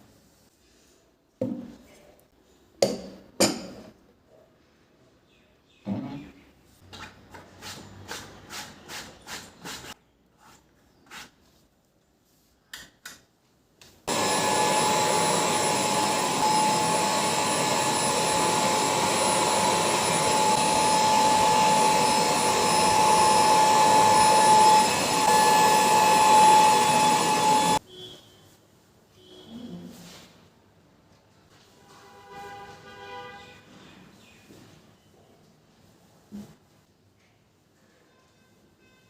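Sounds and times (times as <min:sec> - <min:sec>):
vacuum cleaner running with whine: 0:14.1 - 0:27.8.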